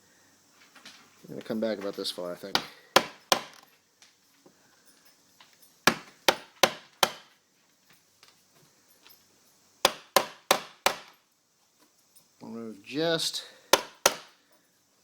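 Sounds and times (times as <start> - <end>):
hammer striking wood chisel: 2.5 - 3.6, 5.9 - 7.3, 9.8 - 11.2, 13.7 - 14.3.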